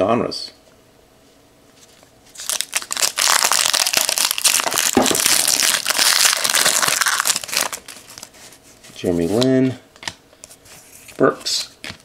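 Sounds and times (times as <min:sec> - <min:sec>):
card pack wrapper crinkling: 0:02.3 - 0:08.4.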